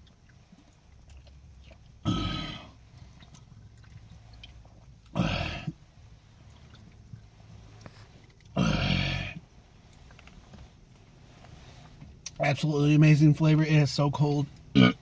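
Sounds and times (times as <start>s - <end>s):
person gulping a drink: 1.1s - 5.8s, 14.7s - 15.0s.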